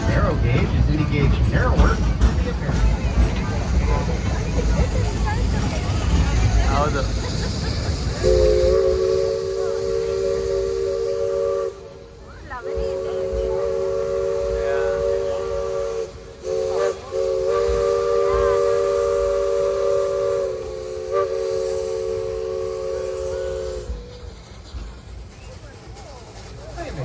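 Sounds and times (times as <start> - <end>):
steam locomotive whistle blasts: 8.2 - 24.3.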